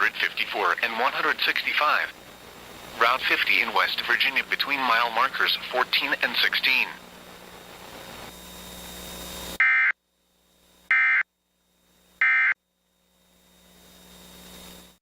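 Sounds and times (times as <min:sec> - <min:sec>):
broadcast hiss: 0:00.0 - 0:11.2, 0:13.1 - 0:15.0
buzzing digital data tones: 0:08.3 - 0:11.3.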